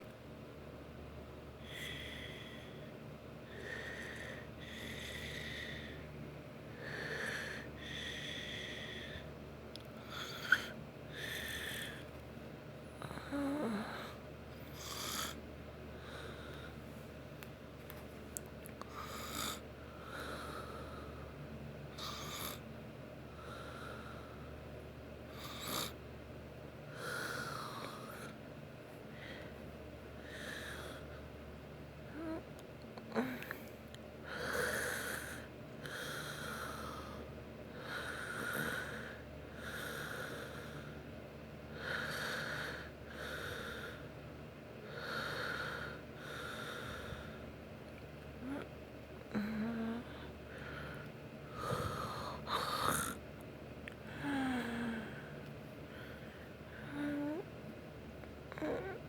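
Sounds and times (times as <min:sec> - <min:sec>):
snoring: 0:22.0 - 0:22.6, 0:25.4 - 0:26.0, 0:37.8 - 0:40.8, 0:51.6 - 0:53.2.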